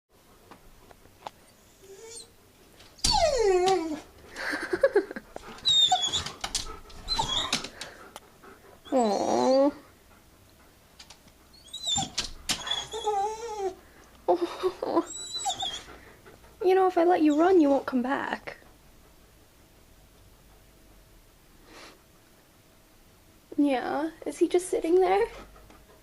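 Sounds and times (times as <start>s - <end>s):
dog whining and yowling: 1.5s - 2.4s, 3.0s - 4.2s, 5.5s - 7.9s, 8.8s - 9.9s, 11.5s - 13.8s, 14.8s - 16.0s.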